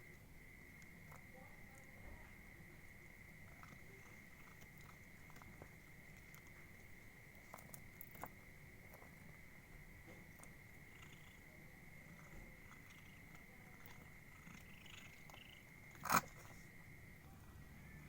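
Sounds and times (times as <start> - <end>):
cat crunching food: 3.1 - 16.8.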